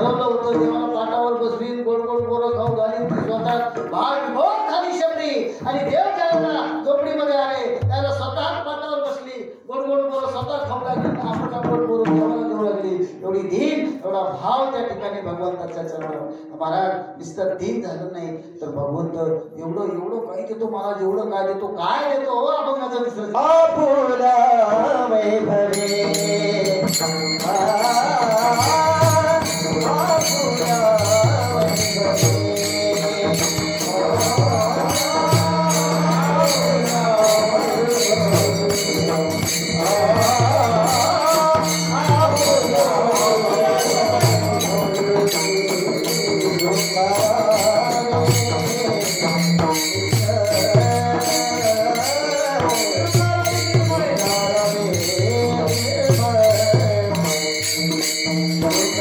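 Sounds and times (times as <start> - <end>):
drum beat: 2.1 - 4.4, 7.8 - 8.7, 26.2 - 59.0
voices singing devotional song: 23.4 - 59.0
small hand cymbals: 25.7 - 59.0.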